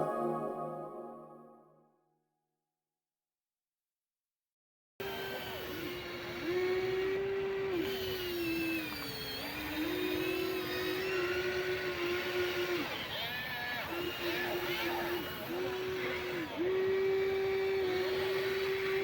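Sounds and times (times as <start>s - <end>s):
small electric motors whining: 5.0s - 19.0s.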